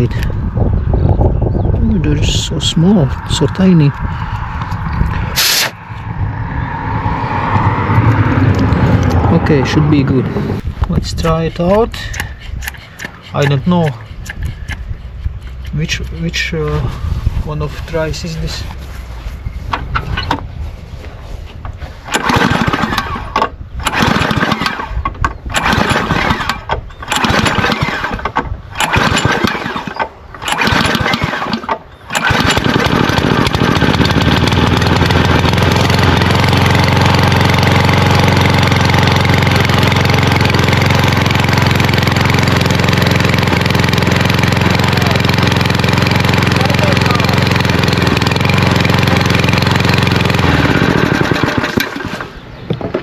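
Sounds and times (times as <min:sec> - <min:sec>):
lawnmower engine running: 0:02.0 - 0:06.1, 0:06.7 - 0:20.4, 0:21.0 - 0:53.0
lawnmower engine cranking: 0:02.3 - 0:05.8, 0:10.3 - 0:16.8, 0:21.6 - 0:52.9.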